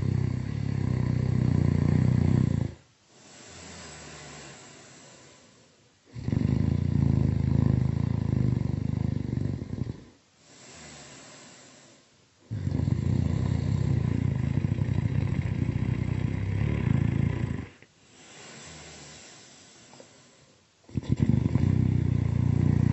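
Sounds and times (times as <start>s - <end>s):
loud rough snoring: 0.0s - 5.3s, 6.1s - 11.9s, 12.5s - 20.0s, 20.9s - 22.9s
soft airy breath: 3.0s - 6.0s, 10.0s - 12.2s, 13.5s - 20.8s.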